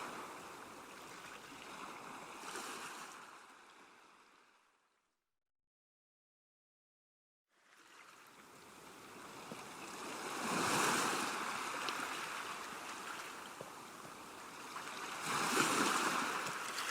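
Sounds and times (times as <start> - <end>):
sea waves washing onto beach: 0.0 - 3.2, 8.3 - 16.9.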